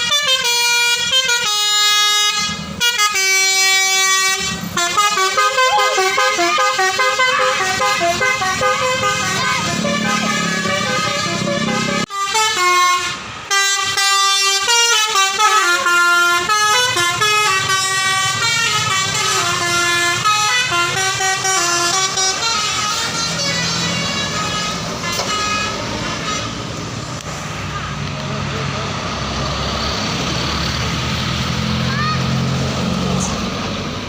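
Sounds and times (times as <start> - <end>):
bus musical horn melody: 0.0 - 26.9
bus engine and road noise: 0.0 - 34.0.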